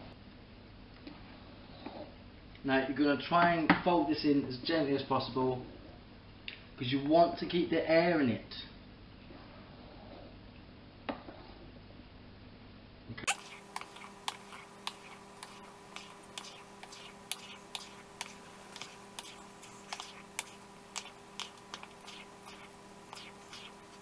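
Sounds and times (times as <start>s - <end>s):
faint hum: 13.3s - 24.0s.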